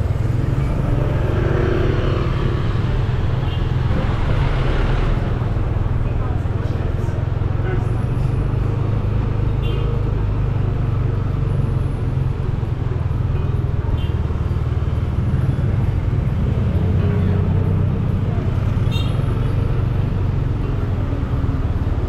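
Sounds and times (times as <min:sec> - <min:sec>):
traffic rumble on busy street: 0:00.0 - 0:22.0.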